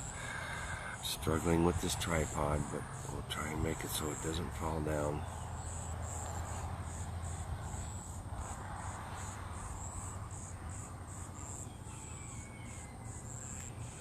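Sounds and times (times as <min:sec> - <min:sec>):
crickets chirping: 0:00.0 - 0:14.0.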